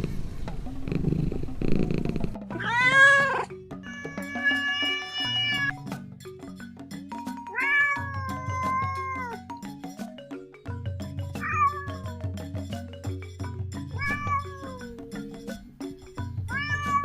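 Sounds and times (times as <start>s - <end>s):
cat purring: 0.0s - 3.5s
cat meowing: 2.5s - 5.7s, 7.5s - 9.3s, 11.4s - 12.0s, 14.0s - 14.9s, 16.5s - 17.0s.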